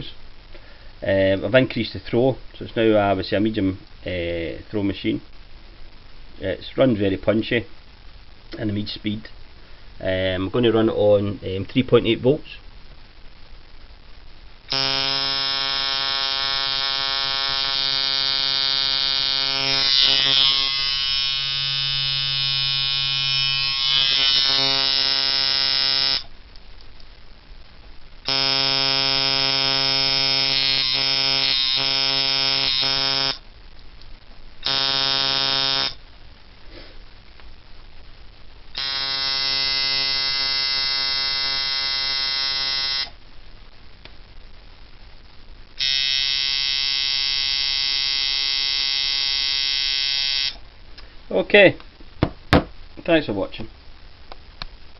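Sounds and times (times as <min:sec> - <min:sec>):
tattoo machine buzzing: 0:14.7 - 0:26.3, 0:28.2 - 0:33.4, 0:34.6 - 0:36.0, 0:38.8 - 0:43.1, 0:45.8 - 0:50.6.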